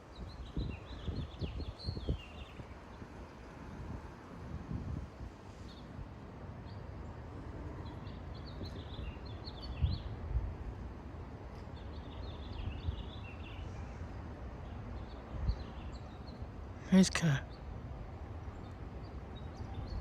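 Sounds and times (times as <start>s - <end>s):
wind rumble on microphone: 0.0s - 6.3s, 7.0s - 11.1s, 11.7s - 13.8s, 15.0s - 16.1s, 18.6s - 20.0s
small birds chirping: 0.1s - 2.7s.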